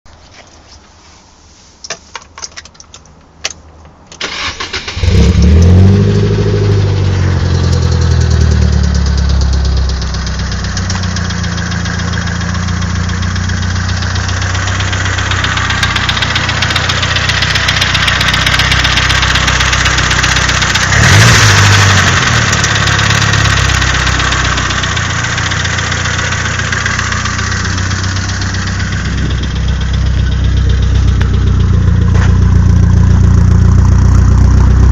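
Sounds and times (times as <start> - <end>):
engine cranking and starting: 4.1 - 5.8
engine idling: 6.2 - 34.9.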